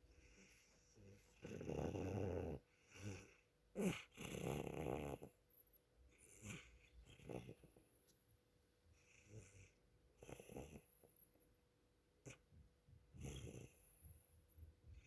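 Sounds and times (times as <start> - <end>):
faint breaths: 0.0 - 1.6
cat snoring: 1.4 - 5.3, 6.1 - 7.8, 9.0 - 11.1, 13.1 - 14.2.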